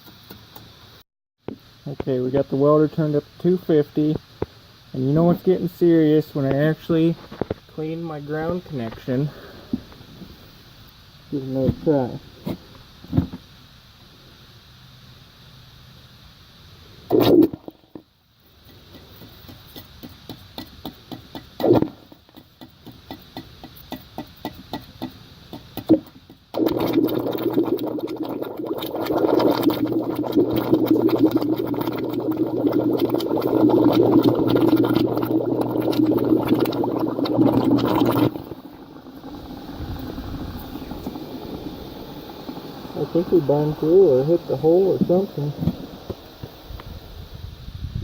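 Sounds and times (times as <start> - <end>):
welding arc sputtering pops: 37.4 - 47.0.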